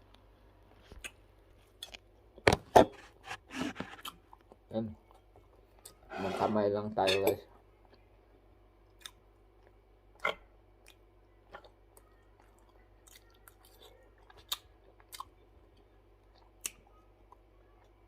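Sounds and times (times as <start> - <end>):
chewing and mouth smacks: 8.8 - 18.0.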